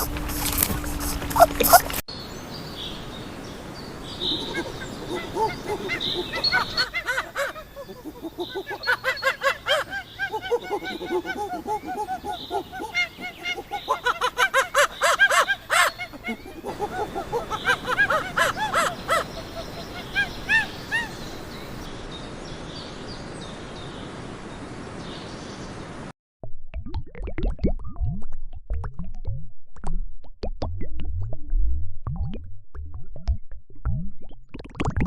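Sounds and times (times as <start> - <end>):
flock of birds calling: 3.9 - 21.9.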